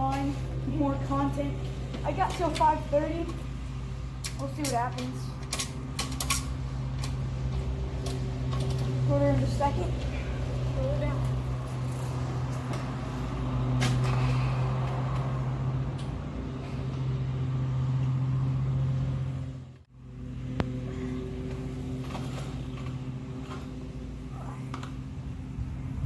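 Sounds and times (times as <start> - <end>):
small motorcycle engine droning: 5.7 - 26.0.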